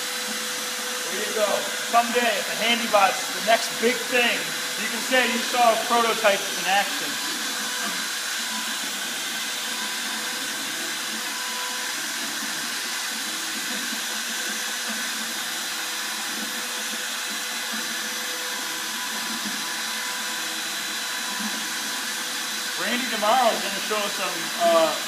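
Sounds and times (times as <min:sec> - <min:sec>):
router spindle cutting wood: 0:00.0 - 0:25.0.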